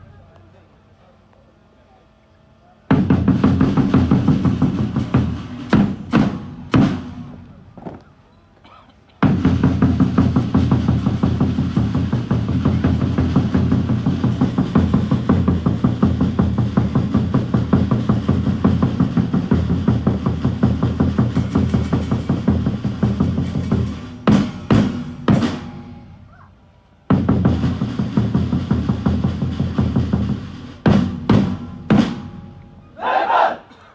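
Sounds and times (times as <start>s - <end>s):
drum music with fast beat: 2.9s - 7.4s, 9.2s - 25.9s, 27.1s - 32.5s
sharp loud drum hits: 30.9s - 32.6s.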